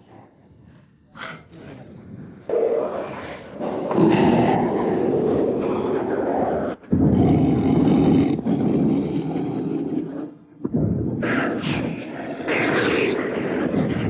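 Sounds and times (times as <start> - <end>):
monster roar: 2.5 - 10.1.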